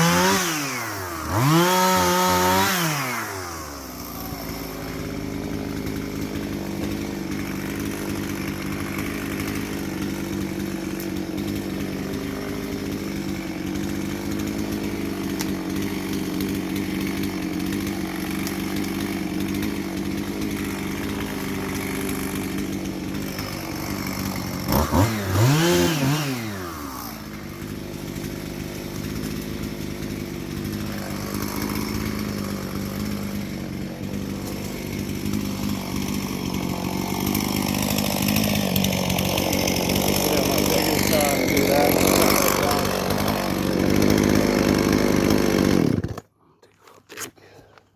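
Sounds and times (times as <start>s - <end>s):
chainsaw engine running: 0.0s - 46.3s.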